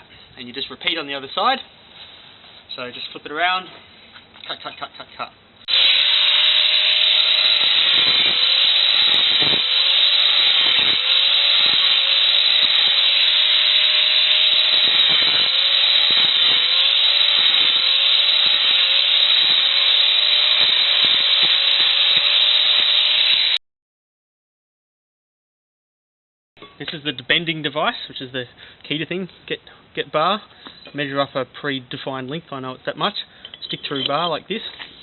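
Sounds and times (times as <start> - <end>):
angle grinder cutting steel: 5.7 - 23.6.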